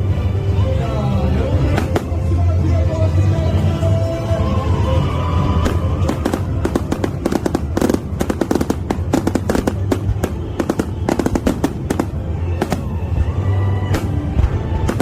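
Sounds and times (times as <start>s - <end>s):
music playing: 0.0s - 15.0s
fireworks bursting and crackling: 1.7s - 2.5s, 5.4s - 15.0s.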